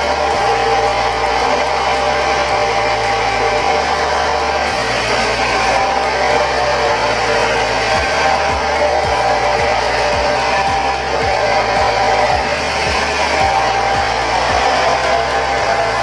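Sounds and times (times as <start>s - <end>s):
guitar and bass music: 0.0s - 16.0s
hair dryer blowing: 0.0s - 16.0s.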